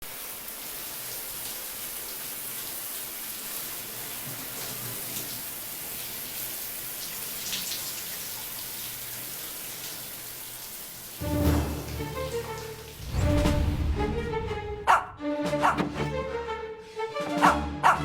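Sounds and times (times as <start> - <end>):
shower water spraying: 0.0 - 13.8
water splash: 11.2 - 14.3.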